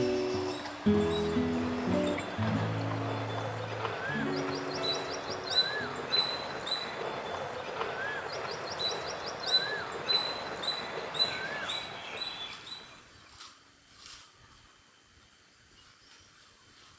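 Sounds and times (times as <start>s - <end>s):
guitar music: 0.0s - 7.6s
bird whistling: 0.0s - 12.9s
bird trills: 0.0s - 13.0s
high bird chirps: 0.0s - 13.0s.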